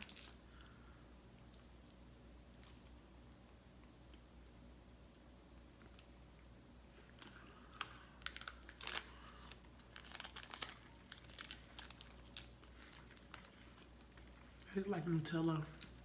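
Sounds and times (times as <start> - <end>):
wrapper crinkling: 0.0 - 0.7, 6.9 - 16.0.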